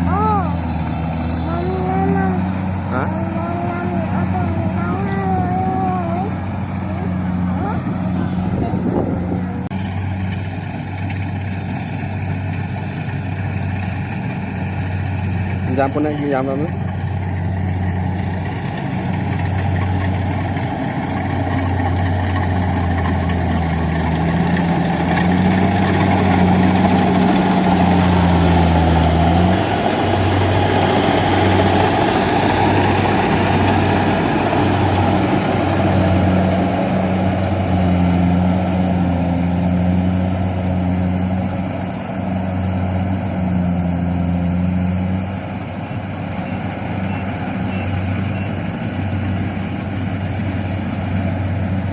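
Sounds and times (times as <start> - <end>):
combine harvester engine running: 0.0 - 51.9.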